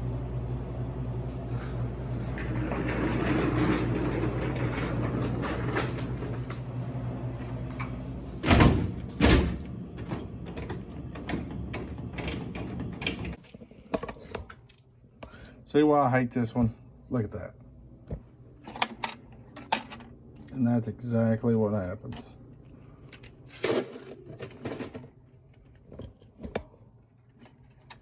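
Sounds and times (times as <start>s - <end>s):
low machine hum: 0.0s - 13.4s, 15.0s - 24.9s.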